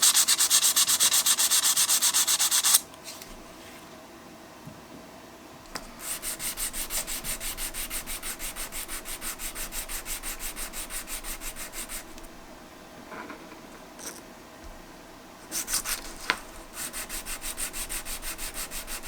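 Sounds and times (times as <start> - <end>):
metal rubbed on sandpaper: 0.0 - 2.8, 6.0 - 12.4, 15.5 - 19.0.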